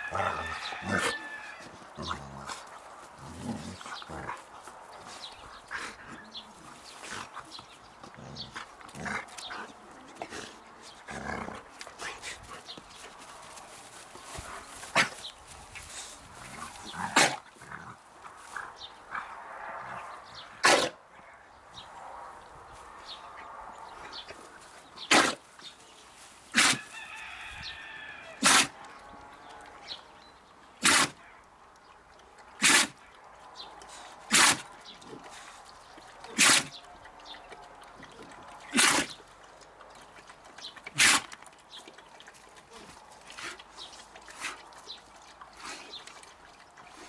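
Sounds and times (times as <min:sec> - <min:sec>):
dog sneezing: 0:28.4 - 0:28.7, 0:30.8 - 0:31.1, 0:32.6 - 0:32.9, 0:34.3 - 0:34.6, 0:36.4 - 0:36.7.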